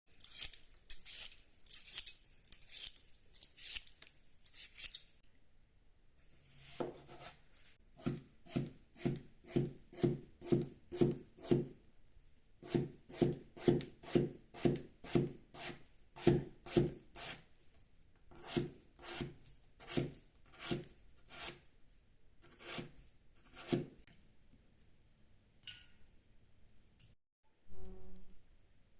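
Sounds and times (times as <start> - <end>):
knife slicing potato: 8.0 - 11.7, 12.6 - 17.5, 18.3 - 21.7, 22.4 - 24.0.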